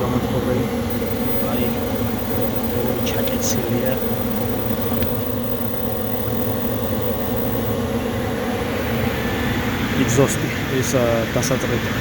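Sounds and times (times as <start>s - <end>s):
furnace motor humming: 0.9s - 9.2s.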